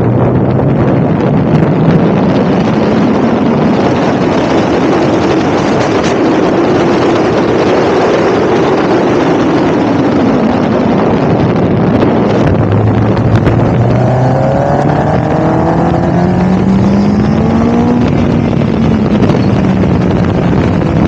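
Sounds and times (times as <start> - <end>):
wind buffeting microphone: 0.0 - 21.0
car engine revving hard: 11.1 - 21.0.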